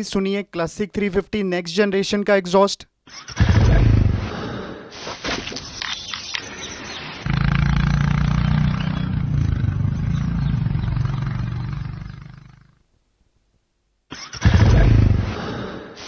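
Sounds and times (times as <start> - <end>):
uneven noise: 6.4 - 12.9
motorcycle exhaust deep note: 7.2 - 12.8.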